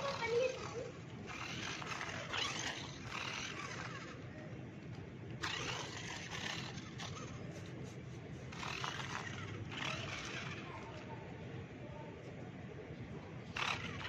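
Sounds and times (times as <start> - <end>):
toy car motor and tyres scraping: 0.0 - 4.3, 5.4 - 11.1, 13.4 - 14.0.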